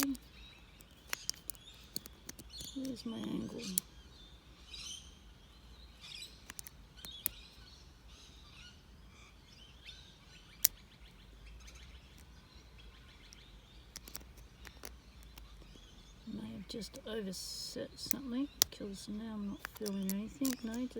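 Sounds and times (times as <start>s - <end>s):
sharp clicks: 0.0s - 3.9s, 6.4s - 7.4s, 13.3s - 15.7s, 19.6s - 20.9s
birds chirping: 0.0s - 20.9s.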